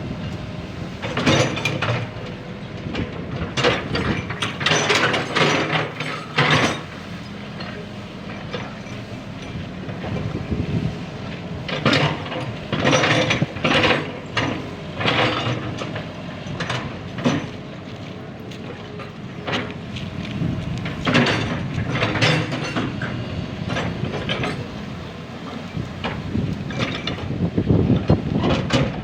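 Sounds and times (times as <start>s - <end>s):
excavator engine drone: 0.0s - 29.0s
harsh scraping and clanking: 11.6s - 27.4s.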